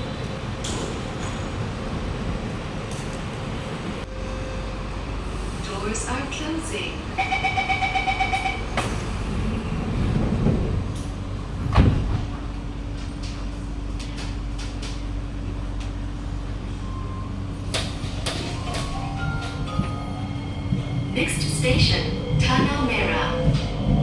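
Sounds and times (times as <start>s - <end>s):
train door chime beeping: 7.2s - 8.8s, 16.8s - 23.4s.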